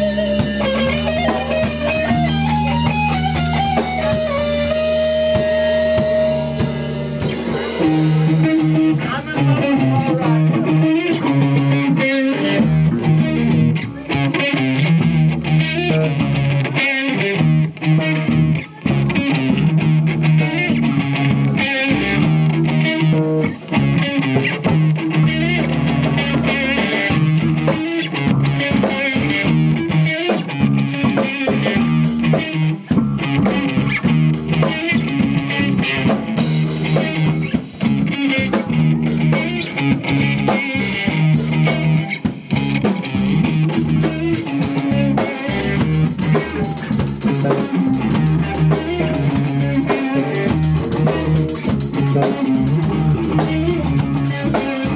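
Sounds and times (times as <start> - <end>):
drums with cymbal and snare: 0.0 - 10.8, 12.3 - 14.2, 17.4 - 54.9
bass guitar: 0.0 - 54.9
electric guitar: 0.0 - 54.9.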